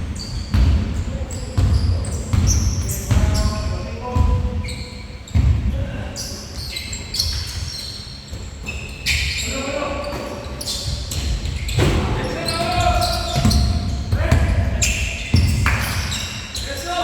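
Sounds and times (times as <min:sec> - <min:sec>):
basketball bouncing on gym floor: 0:00.0 - 0:06.0, 0:10.0 - 0:16.2
shoe squeaks: 0:00.1 - 0:17.0.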